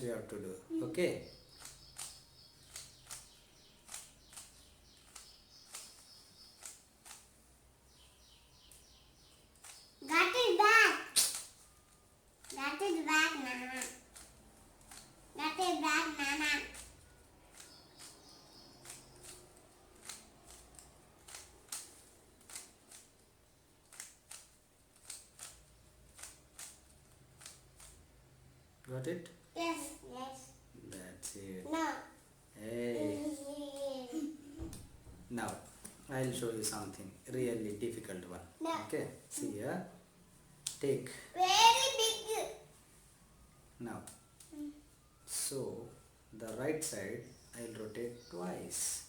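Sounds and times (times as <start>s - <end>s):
plastic puzzle cube turning clicks: 20.0s - 23.2s, 23.8s - 28.0s.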